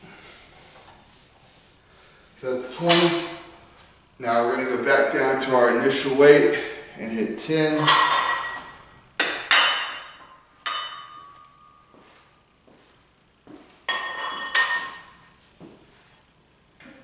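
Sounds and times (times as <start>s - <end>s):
metal weight plates clanking: 7.8s - 11.5s.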